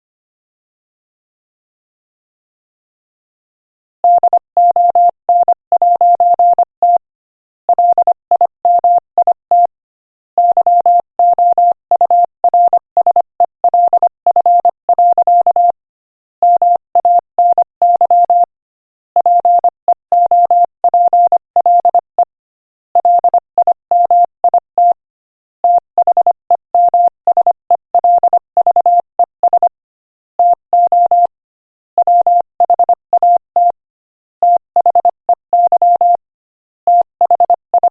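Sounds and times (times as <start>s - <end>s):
morse code beeps: 4.1s - 7.0s, 7.8s - 9.7s, 10.4s - 15.8s, 16.4s - 18.5s, 19.2s - 22.3s, 23.0s - 25.0s, 25.6s - 29.8s, 30.4s - 31.4s, 32.0s - 33.8s, 34.4s - 36.2s, 36.9s - 37.9s.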